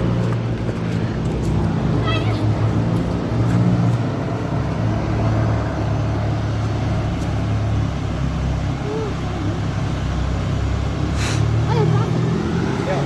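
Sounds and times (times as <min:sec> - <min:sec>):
diesel engine droning: 0:00.0 - 0:13.0.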